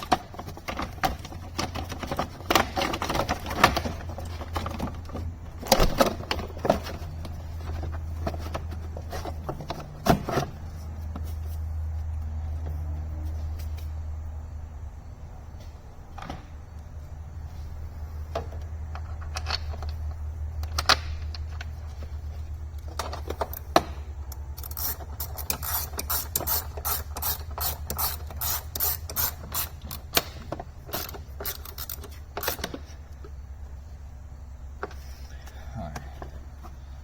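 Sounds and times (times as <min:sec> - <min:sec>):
clicks and knocks of parts handled: 0:00.0 - 0:14.0, 0:18.3 - 0:33.4
steady low hum: 0:00.0 - 0:37.0
ratchet wrench clicking: 0:24.6 - 0:32.7.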